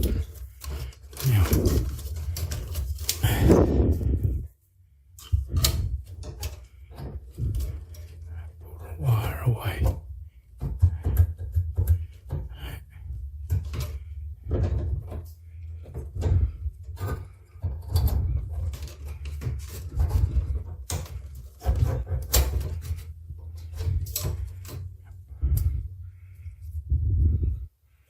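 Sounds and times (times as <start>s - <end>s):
plastic parts clicking and rattling: 0.0s - 4.5s, 5.1s - 9.0s, 9.6s - 26.8s
steady low hum: 0.0s - 28.0s.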